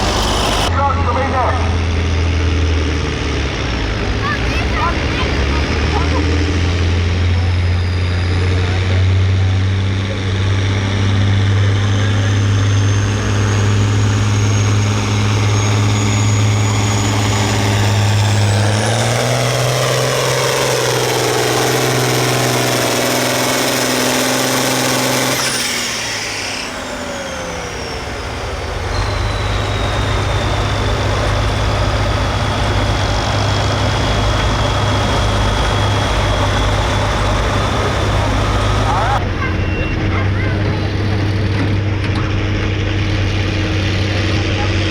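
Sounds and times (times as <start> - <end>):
diesel tractor engine running: 0.0 - 44.9
turbo whistle whine: 12.5 - 40.3.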